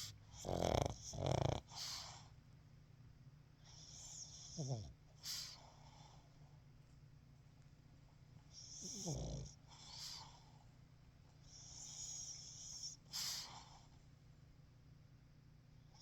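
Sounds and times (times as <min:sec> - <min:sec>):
dog snoring wheezily: 0:00.0 - 0:02.2, 0:08.7 - 0:10.3
dog snorting: 0:00.0 - 0:02.2, 0:08.6 - 0:10.4.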